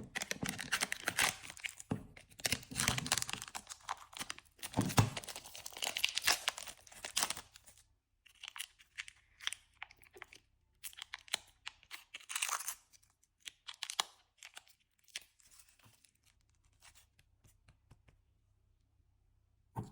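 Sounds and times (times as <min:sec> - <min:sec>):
packaging tearing and rustling: 0:00.1 - 0:07.7.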